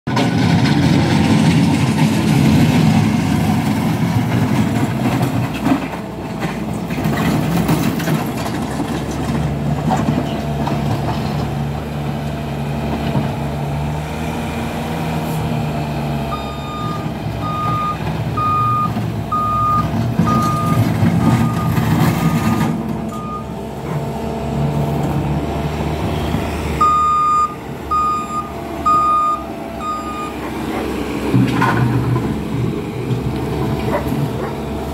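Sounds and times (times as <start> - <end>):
diesel engine running: 0.1 - 34.9
reversing alarm beeping: 16.3 - 23.5, 26.8 - 30.4.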